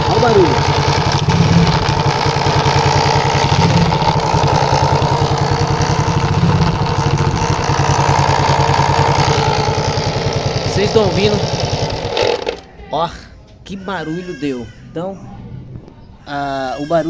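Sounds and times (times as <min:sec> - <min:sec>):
motorcycle engine idling: 0:00.0 - 0:12.7
abnormal mechanical engine noise: 0:00.0 - 0:13.7.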